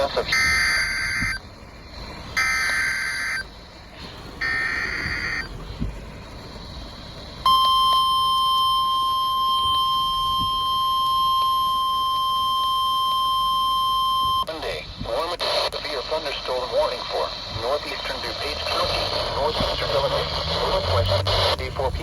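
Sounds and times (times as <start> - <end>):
digital alert data bursts: 0.0 - 1.4, 2.4 - 3.5, 4.4 - 5.5
steady warning alarm tone: 0.0 - 1.5, 2.4 - 3.6, 4.4 - 5.6, 6.4 - 14.5.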